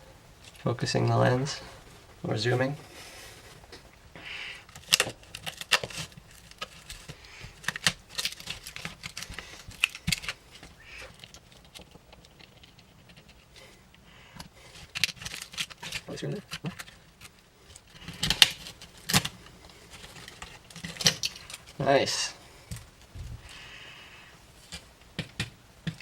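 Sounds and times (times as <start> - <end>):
plastic parts clicking and tapping: 4.7 - 21.8, 24.7 - 26.0.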